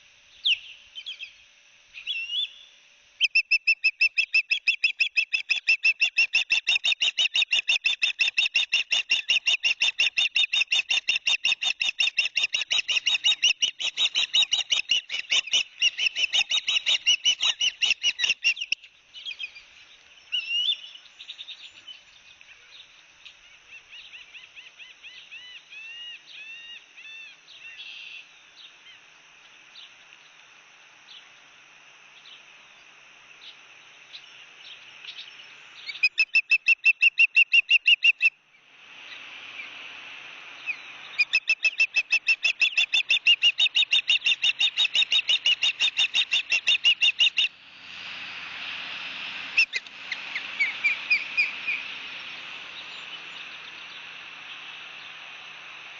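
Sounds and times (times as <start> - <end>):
ospreys calling: 48.8 - 54.3.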